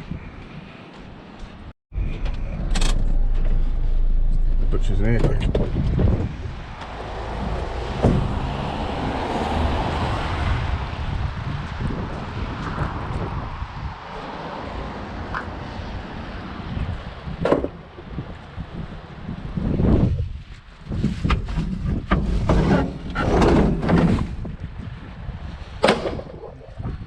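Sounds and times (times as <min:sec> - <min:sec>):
wind buffeting microphone: 0:00.0 - 0:27.0
sharp knock: 0:08.0 - 0:08.4.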